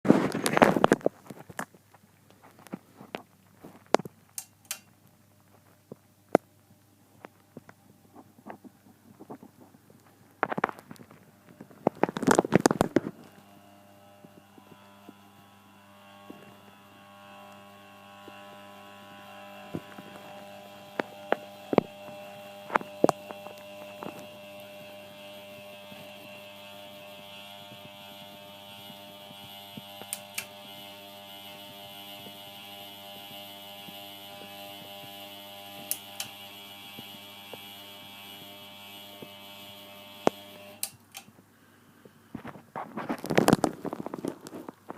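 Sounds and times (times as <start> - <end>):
sharp clicks: 4.0 - 5.0, 27.3 - 30.8
ceiling fan motor buzzing: 11.4 - 41.3.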